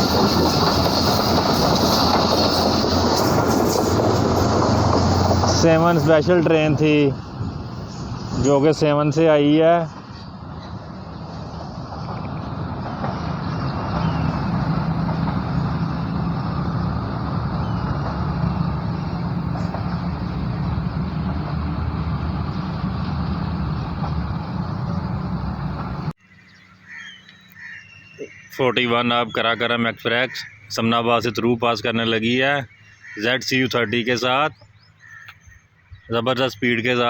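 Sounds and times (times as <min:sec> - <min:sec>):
train rumbling past: 0:00.0 - 0:26.2
train engine drone: 0:00.0 - 0:26.5.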